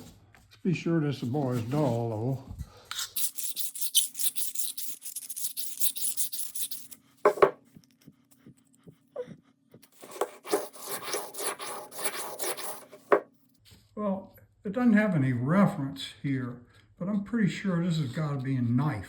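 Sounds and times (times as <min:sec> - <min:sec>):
knife blade scraping: 0:02.9 - 0:07.0, 0:09.9 - 0:13.2.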